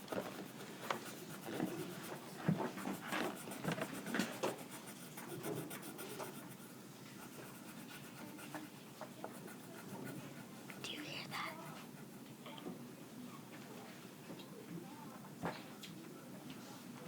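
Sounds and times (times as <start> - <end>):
faint scratching and rubbing: 0.0 - 12.3.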